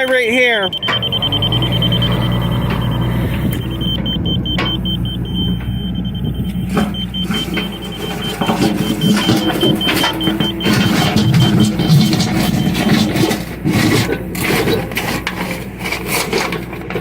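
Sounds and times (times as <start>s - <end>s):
high electronic beeps: 0.0s - 13.0s
diesel excavator engine running: 0.0s - 17.0s.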